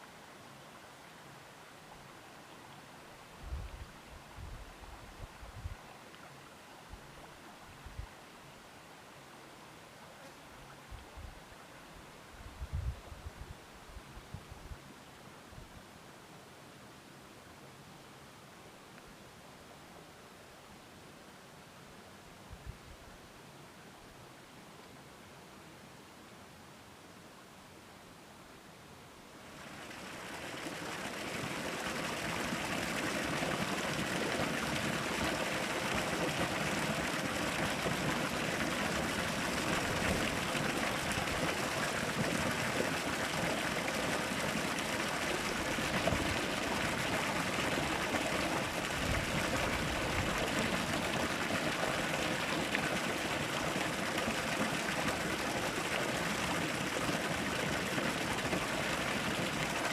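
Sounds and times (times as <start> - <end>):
stream water babbling: 0.0 - 12.3, 29.3 - 59.9.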